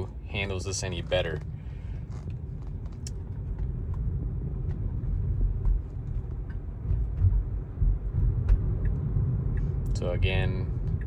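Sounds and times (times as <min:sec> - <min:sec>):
road and tyre rumble in car: 0:00.0 - 0:11.0.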